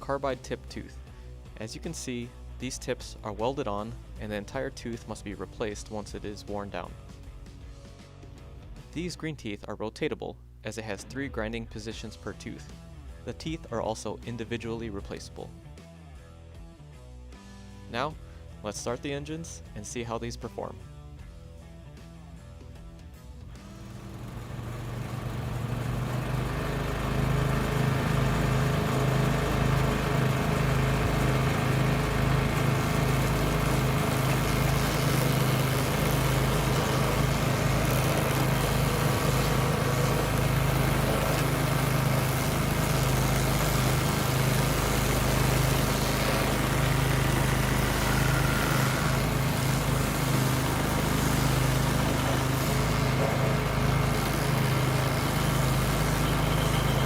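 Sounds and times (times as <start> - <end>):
stump grinder engine running: 23.6 - 57.0.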